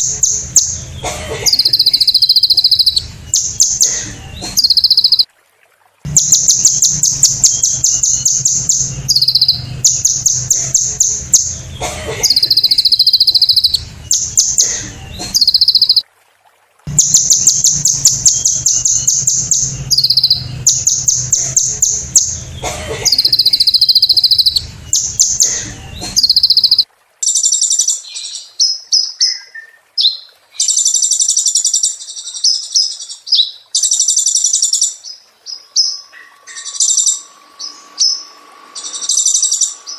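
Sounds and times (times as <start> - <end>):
low hum: 0.0 - 5.1, 6.1 - 15.9, 16.9 - 26.6, 35.5 - 39.9
bird singing trilled phrases: 0.0 - 5.3, 6.1 - 16.0, 16.9 - 39.9.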